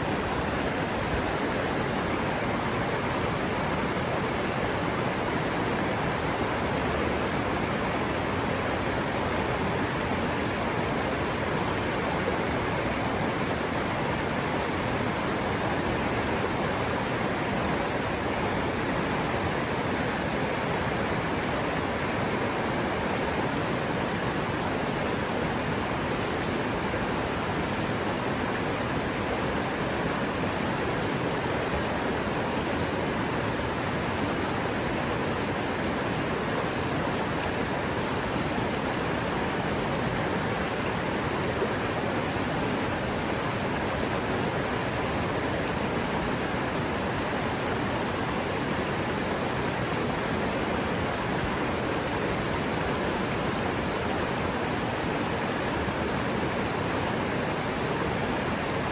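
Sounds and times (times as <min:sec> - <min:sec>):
river water rushing over rocks: 0:00.0 - 0:58.9.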